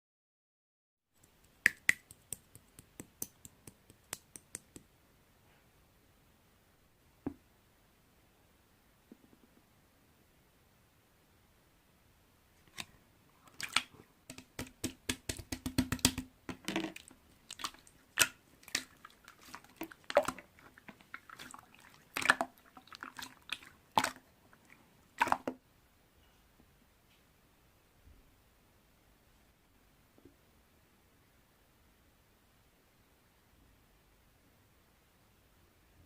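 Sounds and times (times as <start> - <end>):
slime squished by hand: 16.9 - 24.2.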